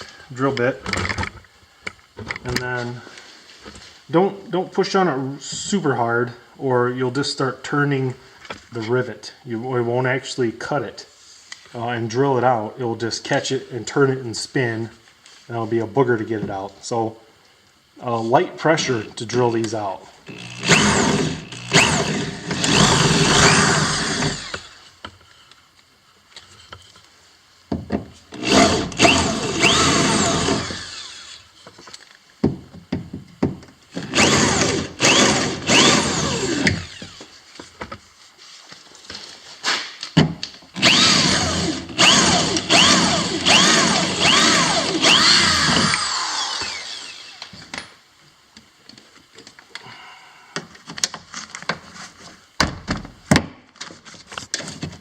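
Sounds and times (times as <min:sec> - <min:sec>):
power drill drilling rivets: 0:20.2 - 0:24.9, 0:28.3 - 0:31.5, 0:33.9 - 0:37.3, 0:40.7 - 0:47.9.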